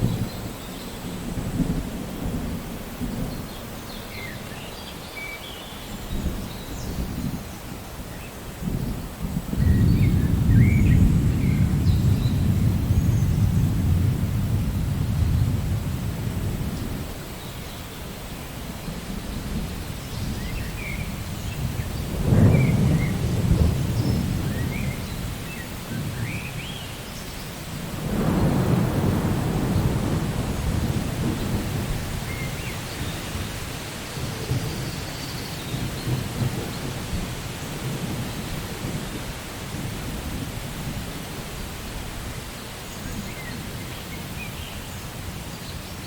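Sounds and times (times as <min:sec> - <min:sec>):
steady rain: 0:00.0 - 0:46.0
thunder rumbling: 0:08.6 - 0:17.3, 0:19.0 - 0:26.7, 0:27.7 - 0:41.1.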